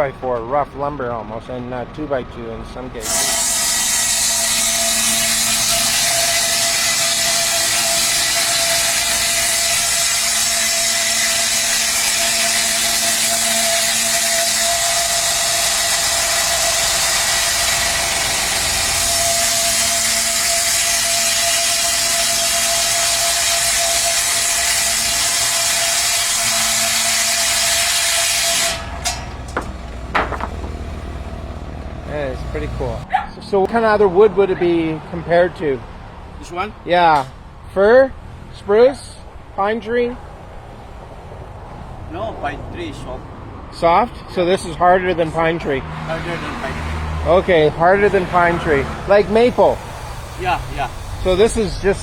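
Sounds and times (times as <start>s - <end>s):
sawmill saw cutting wood: 3.0s - 31.2s, 46.0s - 52.0s
sharp knocks: 28.6s - 31.2s.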